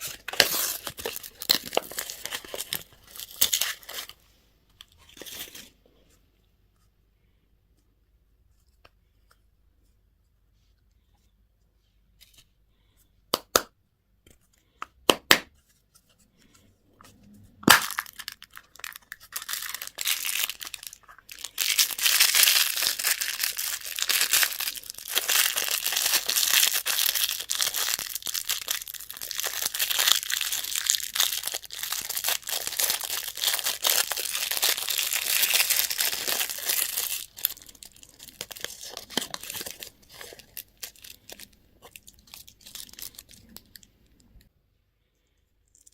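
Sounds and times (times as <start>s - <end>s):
candy wrapper crinkling and tearing: 0.0s - 4.2s, 17.6s - 44.4s, 45.6s - 45.9s.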